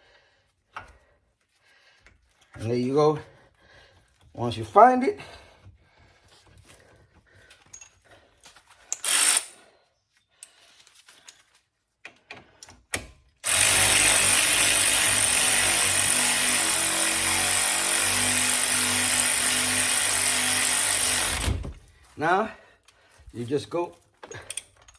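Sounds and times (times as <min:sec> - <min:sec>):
power drill running: 0:09.0 - 0:09.6, 0:13.4 - 0:21.7
metal parts clicking and knocking: 0:24.2 - 0:24.9.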